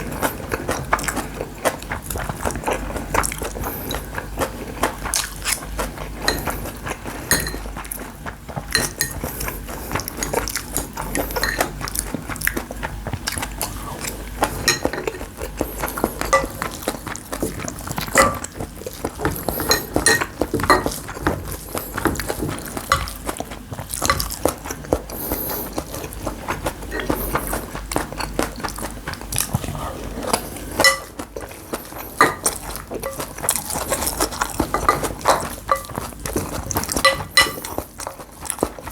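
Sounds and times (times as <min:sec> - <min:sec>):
cutlery clinking against a bowl: 0:04.8 - 0:12.6, 0:13.3 - 0:28.4, 0:29.3 - 0:38.9.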